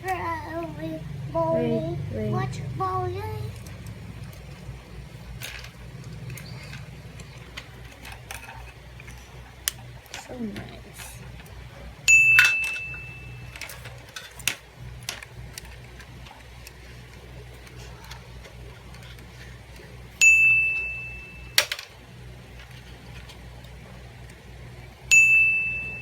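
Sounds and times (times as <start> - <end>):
high bell-like ding: 20.2 - 21.5, 25.1 - 26.0.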